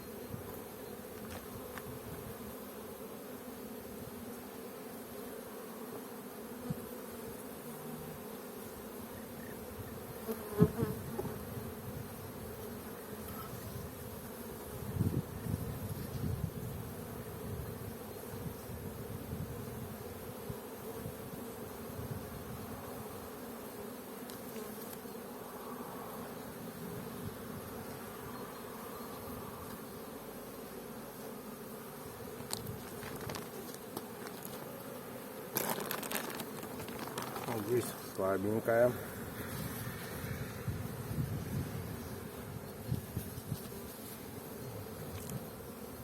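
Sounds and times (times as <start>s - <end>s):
bees buzzing: 0.0s - 46.0s
rustling and clicking of hive handling: 0.4s - 2.4s, 24.2s - 25.2s, 29.6s - 29.9s, 32.0s - 38.5s, 42.6s - 46.0s.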